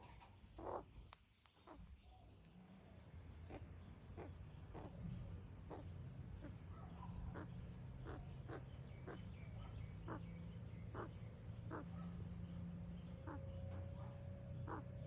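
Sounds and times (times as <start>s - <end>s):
magpie calls: 7.3s - 9.3s, 10.9s - 12.1s, 14.6s - 15.0s.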